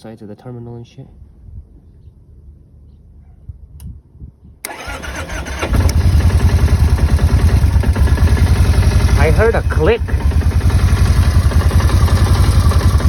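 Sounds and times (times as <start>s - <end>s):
motorcycle engine idling: 4.7s - 13.0s
motorcycle starter cranking: 4.7s - 13.0s.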